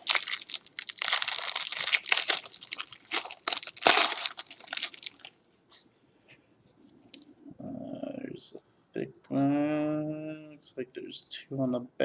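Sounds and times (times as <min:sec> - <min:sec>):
wrapper crinkling and tearing: 0:00.0 - 0:05.4.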